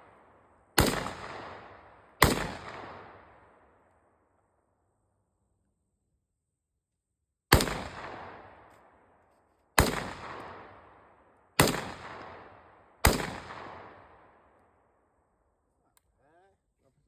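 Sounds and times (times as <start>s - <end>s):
gunshots with echo: 0.0s - 3.6s, 7.5s - 9.0s, 9.8s - 14.4s.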